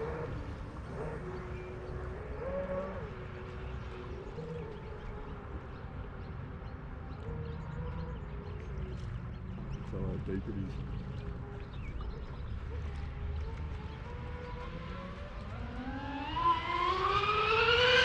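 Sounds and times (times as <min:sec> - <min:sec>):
low wind rumble: 0:00.0 - 0:18.0
electric boat motor whine: 0:12.9 - 0:18.0.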